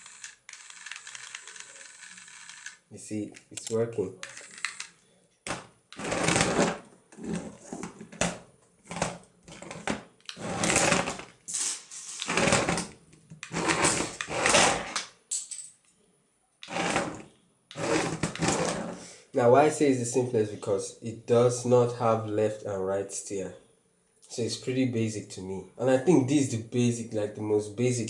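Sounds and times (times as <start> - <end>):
small electric motor whirring: 0.0 - 2.8.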